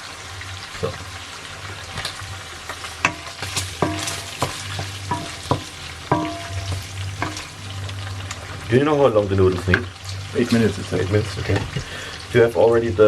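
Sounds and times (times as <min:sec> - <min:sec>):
bacon sizzling in a pan: 0:00.0 - 0:13.0
metal spoon knocking against pan: 0:03.0 - 0:07.5.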